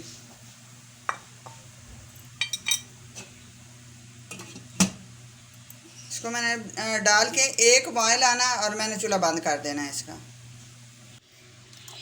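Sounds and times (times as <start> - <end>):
utensils clinking against a pot: 2.4 - 2.9.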